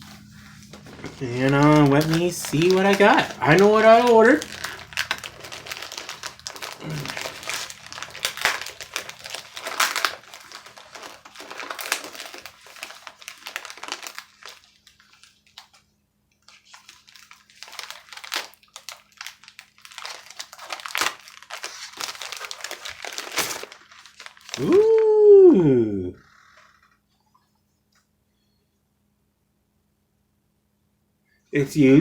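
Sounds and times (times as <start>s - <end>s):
packaging crinkling and rustling: 0.0s - 25.4s.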